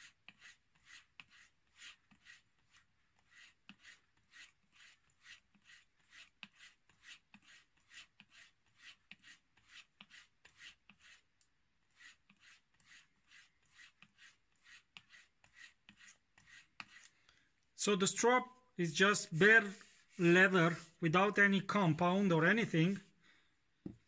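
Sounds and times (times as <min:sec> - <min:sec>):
razor stropped on leather: 0:00.0 - 0:11.3, 0:11.9 - 0:17.2, 0:19.6 - 0:21.0.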